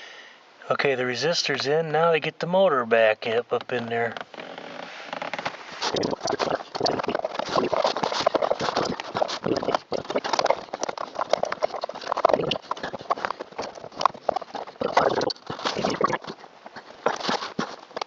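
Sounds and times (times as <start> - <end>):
plastic and metal parts clattering: 5.1 - 18.0.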